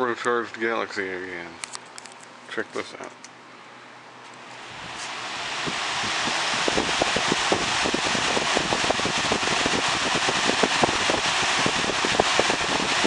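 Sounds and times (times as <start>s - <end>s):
box fan rushing air: 3.3s - 13.0s.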